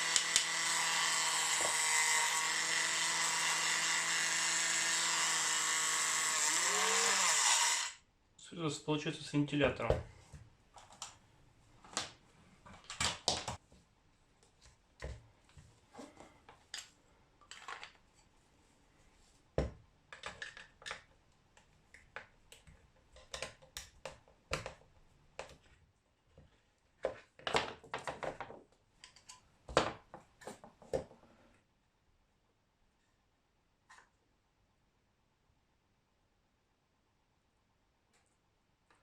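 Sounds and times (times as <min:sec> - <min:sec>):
plastic parts clicking and knocking: 0:16.5 - 0:18.1, 0:20.1 - 0:25.7, 0:26.4 - 0:31.2.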